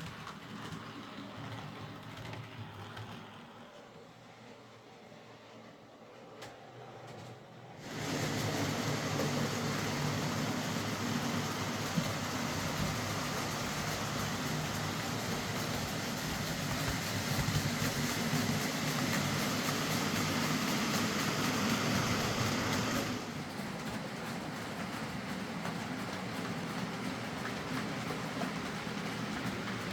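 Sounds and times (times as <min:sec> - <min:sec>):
wheels rolling on rails: 0:00.0 - 0:04.1, 0:06.1 - 0:29.9.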